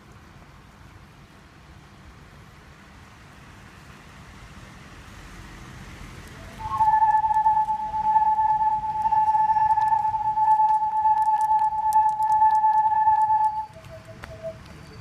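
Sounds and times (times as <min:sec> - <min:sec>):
whirly tube toy whistling: 0:06.4 - 0:15.0.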